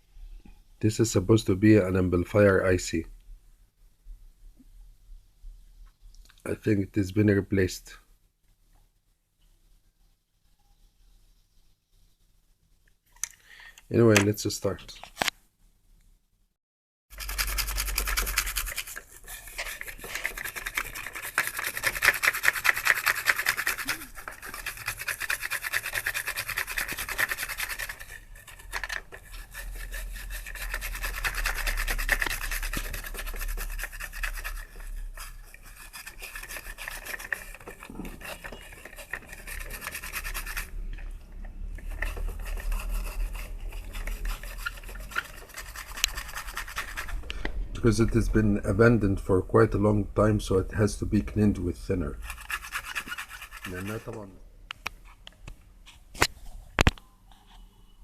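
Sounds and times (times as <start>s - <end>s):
scratchy scrubbing on circuit board: 17.1s - 47.3s, 50.8s - 54.3s.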